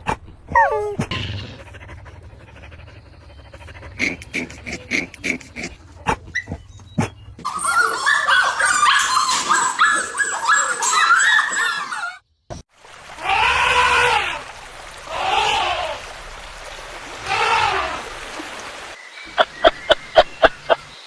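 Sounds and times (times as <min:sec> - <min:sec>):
puppies whimpering and yipping: 0:06.3 - 0:12.2.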